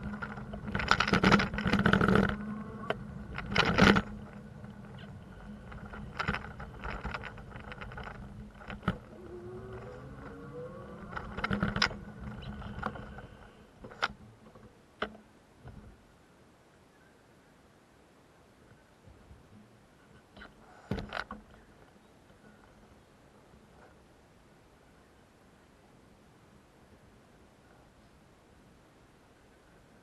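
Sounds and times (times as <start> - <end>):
traffic hum: 0.0 - 16.8
vehicle engine rising in pitch: 2.0 - 3.4, 9.0 - 13.0.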